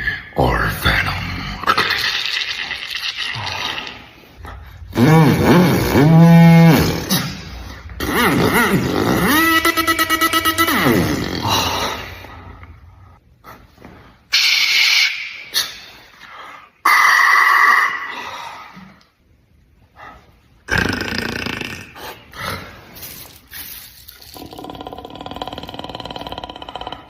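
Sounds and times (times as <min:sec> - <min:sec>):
beatbox mouth noises: 0:04.9 - 0:07.4, 0:08.0 - 0:11.5.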